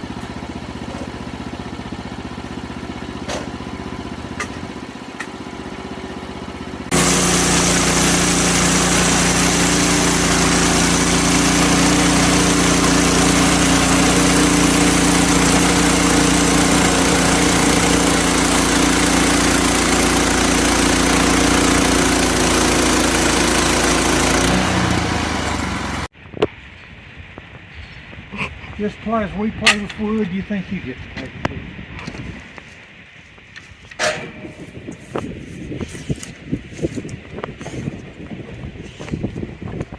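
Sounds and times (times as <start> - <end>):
engine-driven machine running: 0.0 - 26.1.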